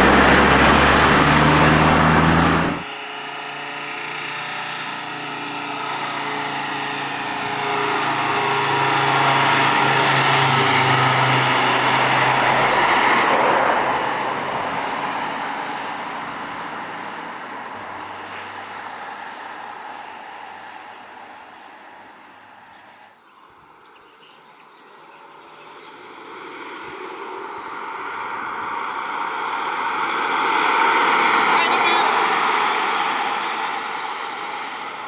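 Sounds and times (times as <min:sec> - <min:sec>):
fire engine driving past: 0:00.0 - 0:22.7.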